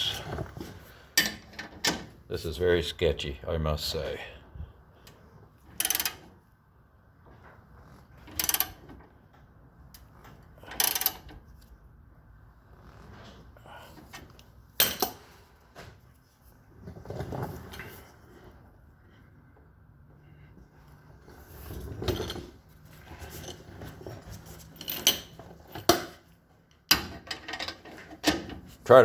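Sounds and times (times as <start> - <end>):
jack cranking metal scraping: 7.8 - 9.2, 10.0 - 11.5.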